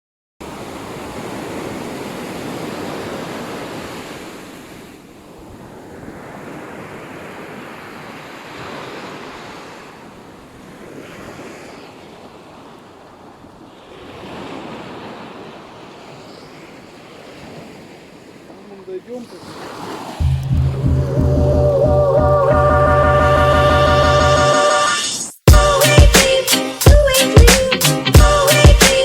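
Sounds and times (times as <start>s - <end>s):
sea waves washing onto shore: 0.4s - 22.1s.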